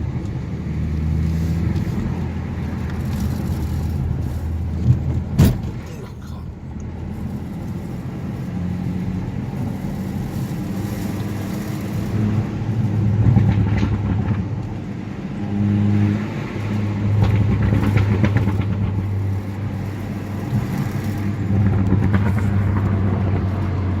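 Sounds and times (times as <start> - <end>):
car engine and road rumble: 0.0 - 24.0
knocks and rattles from undercarriage: 13.1 - 14.8, 17.1 - 19.4, 20.5 - 24.0.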